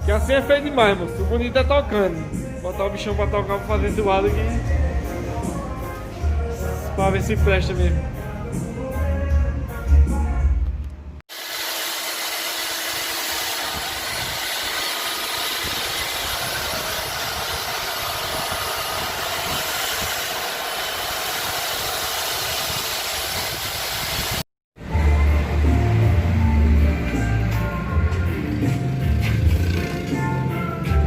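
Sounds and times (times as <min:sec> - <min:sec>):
bass-heavy music: 0:00.0 - 0:11.2, 0:24.8 - 0:31.0.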